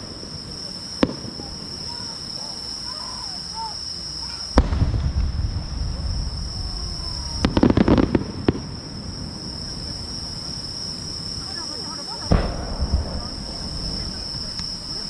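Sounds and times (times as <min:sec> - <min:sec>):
insects trilling: 0:00.0 - 0:15.0
firework bang with low rumble: 0:01.0 - 0:01.8, 0:04.6 - 0:09.9, 0:12.2 - 0:15.0
crackling pops: 0:12.3 - 0:15.0.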